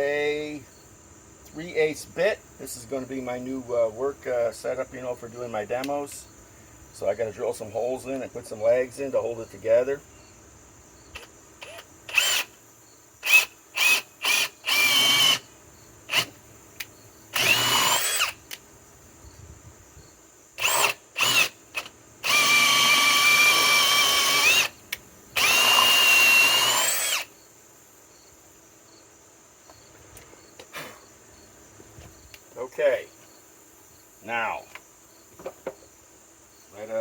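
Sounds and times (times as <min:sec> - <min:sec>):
hammer drill drilling: 0:11.6 - 0:12.5, 0:13.2 - 0:15.4, 0:17.3 - 0:18.4, 0:20.6 - 0:24.7, 0:25.4 - 0:27.3.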